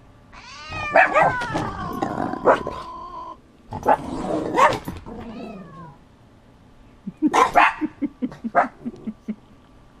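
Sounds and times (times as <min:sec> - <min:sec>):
angry cat sound: 0:00.3 - 0:03.4
dogs barking: 0:00.8 - 0:01.4, 0:03.8 - 0:04.9, 0:07.2 - 0:08.8.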